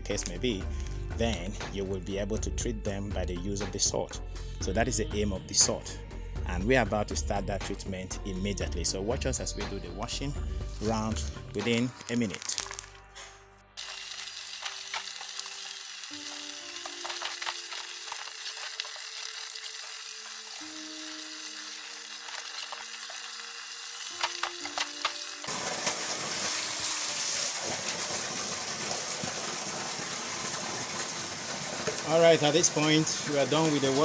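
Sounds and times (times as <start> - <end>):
soft background music: 0.0 - 28.7, 32.1 - 34.0
water sloshing and scrubbing: 16.1 - 20.7.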